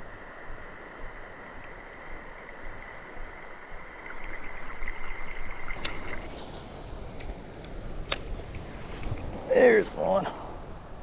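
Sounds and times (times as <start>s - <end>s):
river water rushing: 0.0s - 11.0s.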